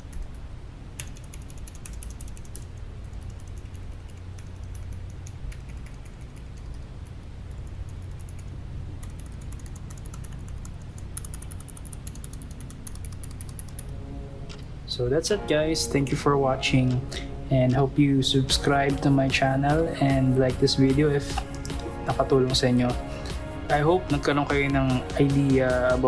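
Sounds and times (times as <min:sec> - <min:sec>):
steady low hum: 0:00.0 - 0:26.0
mechanical keyboard key clicks: 0:01.0 - 0:06.8.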